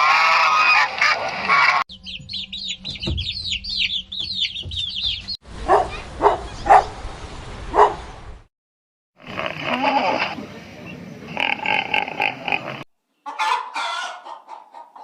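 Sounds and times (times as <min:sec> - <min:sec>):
bird clucking calls: 0:00.8 - 0:06.9, 0:11.3 - 0:15.0
high falling bird chirps: 0:01.9 - 0:06.9.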